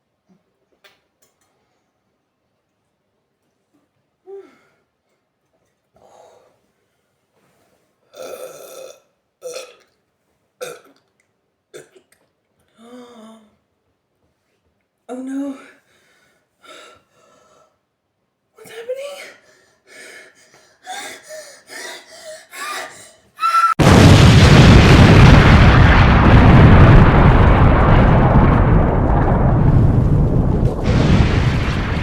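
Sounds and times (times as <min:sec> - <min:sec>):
quiet vocal sounds: 0:12.7 - 0:13.7
explosion rumbling: 0:23.8 - 0:32.0.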